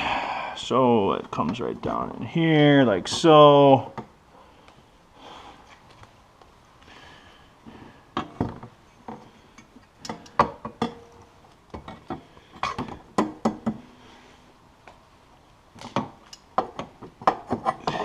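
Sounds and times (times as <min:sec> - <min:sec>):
metal knocking and clinking: 0:08.2 - 0:13.8.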